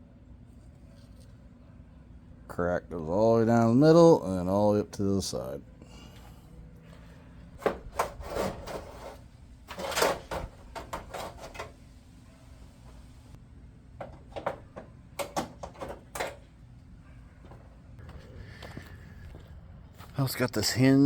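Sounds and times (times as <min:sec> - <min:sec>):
window hinge scraping and knocking: 0:07.6 - 0:11.9, 0:14.0 - 0:16.4.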